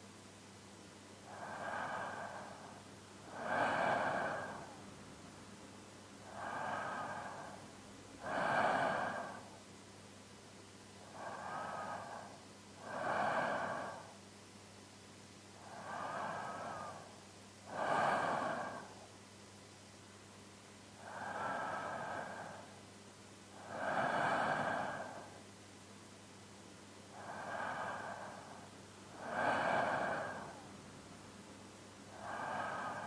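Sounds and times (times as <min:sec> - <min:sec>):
man's slow sleeping breaths: 0:01.2 - 0:05.4, 0:06.2 - 0:09.7, 0:11.0 - 0:14.2, 0:15.6 - 0:19.2, 0:21.0 - 0:22.9, 0:23.5 - 0:25.5, 0:27.1 - 0:31.2, 0:32.0 - 0:33.0.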